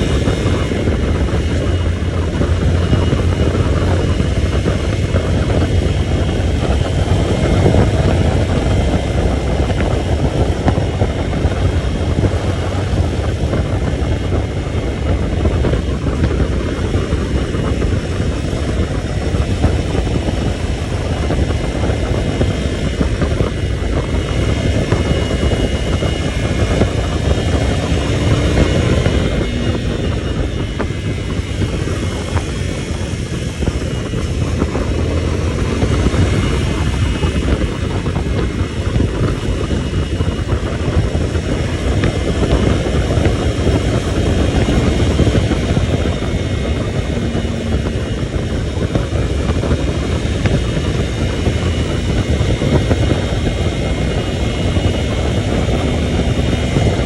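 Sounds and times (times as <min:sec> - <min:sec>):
vehicle engine and road rumble: 0:00.0 - 0:57.0
wind buffeting microphone: 0:00.0 - 0:57.0.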